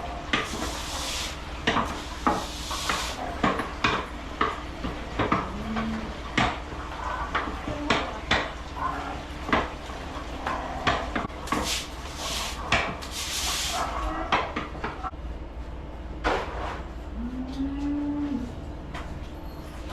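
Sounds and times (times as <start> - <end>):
hiss: 0.4 - 3.2, 11.5 - 13.8.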